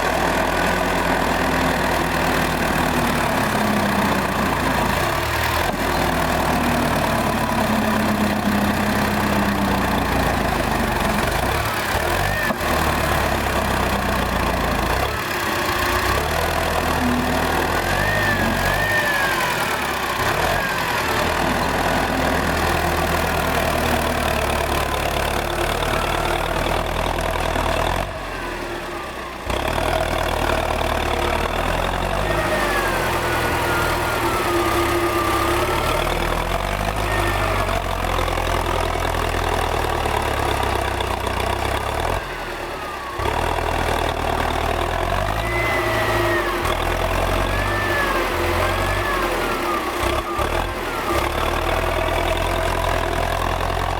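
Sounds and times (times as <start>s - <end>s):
tractor diesel engine running: 0.0s - 53.9s.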